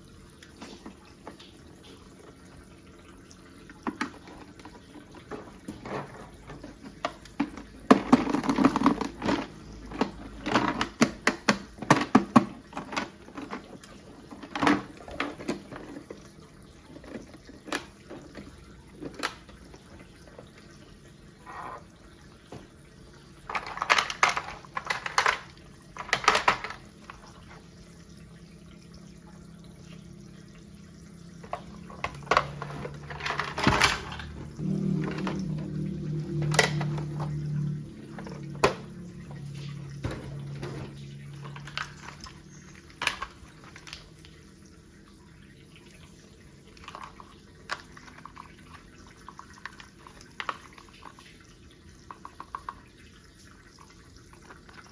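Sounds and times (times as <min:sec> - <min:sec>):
plastic parts rattling: 0:03.8 - 0:16.2, 0:16.9 - 0:20.5, 0:23.4 - 0:27.7, 0:31.4 - 0:44.1, 0:46.8 - 0:48.9
plastic toy parts clicking: 0:23.5 - 0:27.2, 0:31.5 - 0:34.4, 0:43.0 - 0:44.0.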